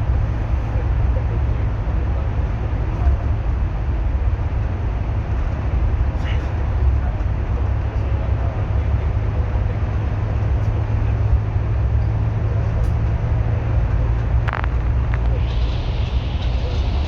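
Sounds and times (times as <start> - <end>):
bus engine and road rumble: 0.0 - 17.0.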